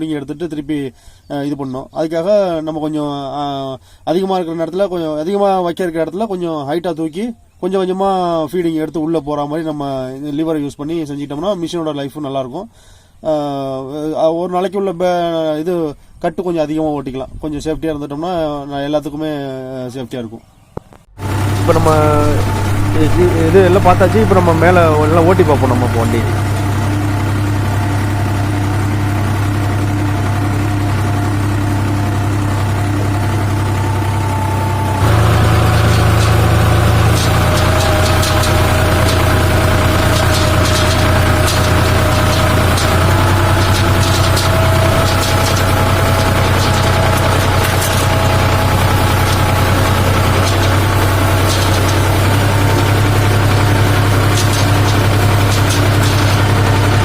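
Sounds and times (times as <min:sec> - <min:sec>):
tractor diesel engine running: 0:21.1 - 0:57.0.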